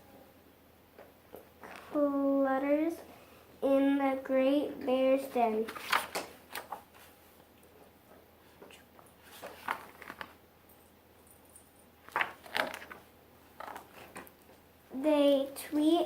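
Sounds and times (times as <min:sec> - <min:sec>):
soft handling noises: 0:05.3 - 0:14.7.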